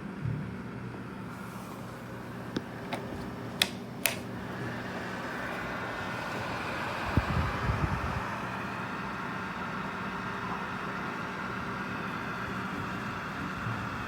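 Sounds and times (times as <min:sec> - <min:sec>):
heater fan whirring: 0:00.0 - 0:14.0
sharp clicks: 0:02.6 - 0:04.4.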